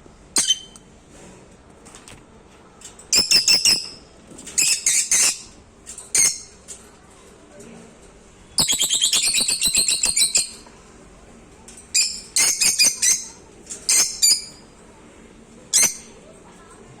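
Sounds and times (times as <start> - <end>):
lovebird chirping: 8.6 - 10.6.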